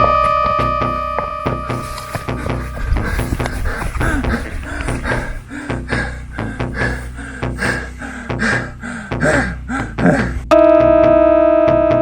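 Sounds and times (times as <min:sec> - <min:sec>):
person panting: 0:01.7 - 0:10.5.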